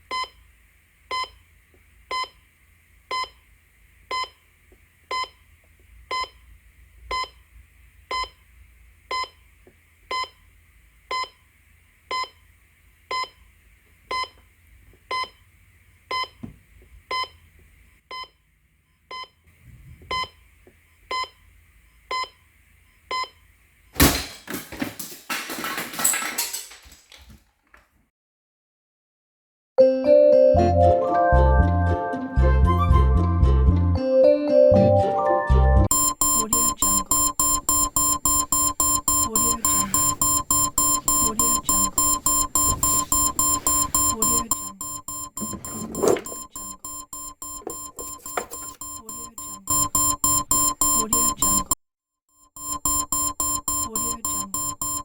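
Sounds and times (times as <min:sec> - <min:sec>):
clattering: 0:24.0 - 0:27.4
digital alarm clock beeping: 0:35.8 - 0:51.8, 0:52.4 - 0:55.0.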